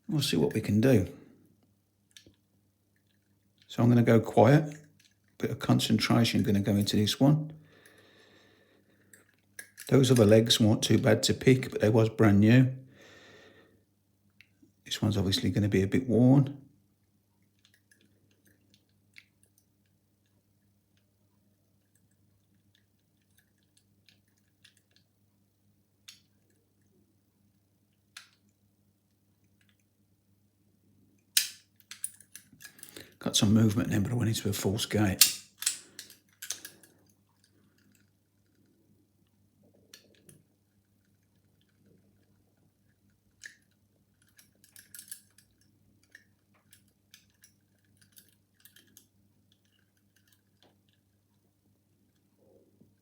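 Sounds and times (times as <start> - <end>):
sharp lock clicks: 31.4 - 32.8, 35.2 - 36.8
lock pick ticks and scrapes: 35.2 - 36.9, 43.4 - 50.7.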